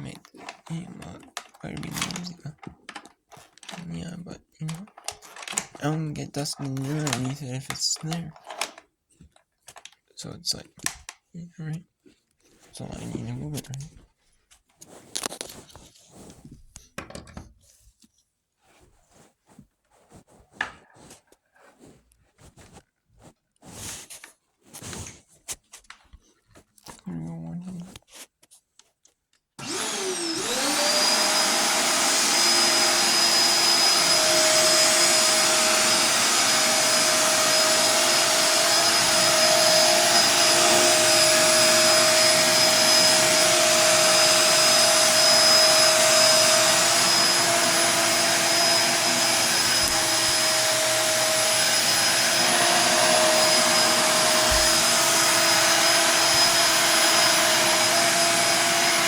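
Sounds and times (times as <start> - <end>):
vacuum cleaner motor whining: 0.0 - 8.8, 29.6 - 59.0.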